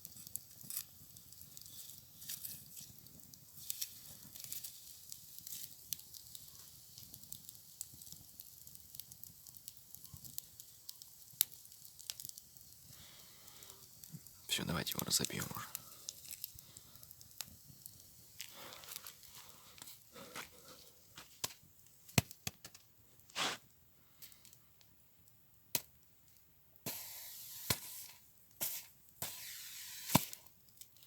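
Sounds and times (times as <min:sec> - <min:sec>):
small crackles: 0:00.0 - 0:31.0
hissy rustling noise: 0:23.3 - 0:23.7, 0:26.9 - 0:30.4.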